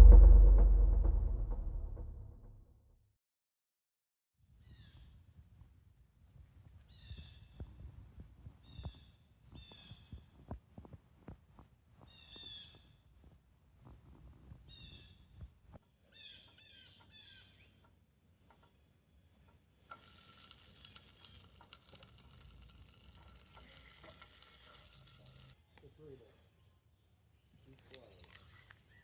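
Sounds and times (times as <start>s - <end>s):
faint bird chirping: 14.7s - 17.9s
even hiss: 19.9s - 25.6s.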